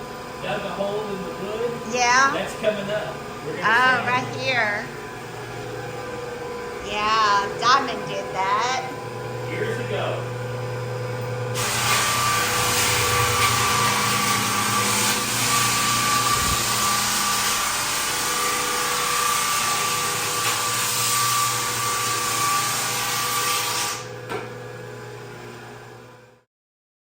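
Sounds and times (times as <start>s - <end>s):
floor sander sanding: 0.0s - 24.2s.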